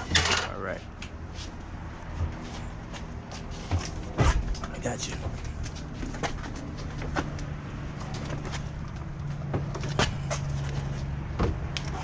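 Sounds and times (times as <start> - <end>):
sharp clunks and knocks: 11.3 - 12.0.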